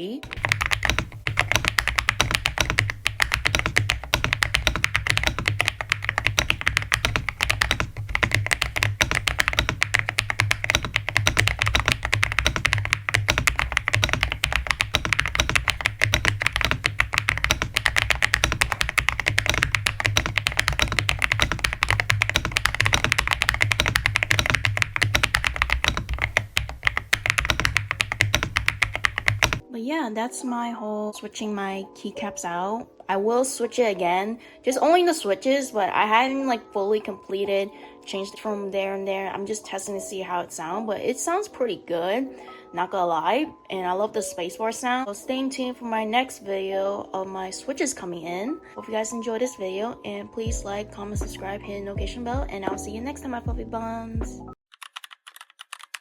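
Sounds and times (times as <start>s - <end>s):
mechanical keyboard typing: 0.2s - 29.6s, 54.7s - 56.0s.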